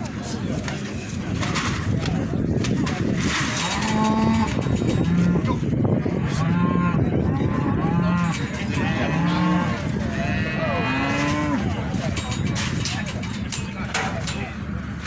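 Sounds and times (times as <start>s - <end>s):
cattle mooing: 3.6s - 5.6s, 6.3s - 11.8s.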